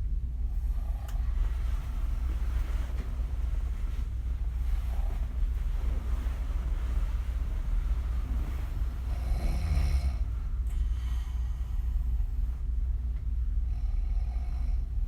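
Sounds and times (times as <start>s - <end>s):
steady low rumble: 0.0s - 15.0s
woman snoring: 9.1s - 10.3s.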